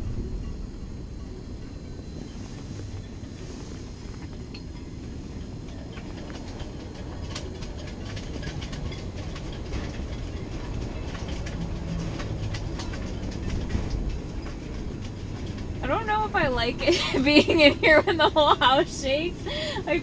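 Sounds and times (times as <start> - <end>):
strong wind rumbling: 0.0 - 20.0.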